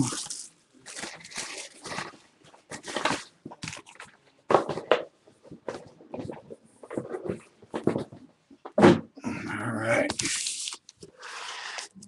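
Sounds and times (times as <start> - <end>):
card pack wrappers crinkling: 0.0 - 4.2, 10.1 - 11.9.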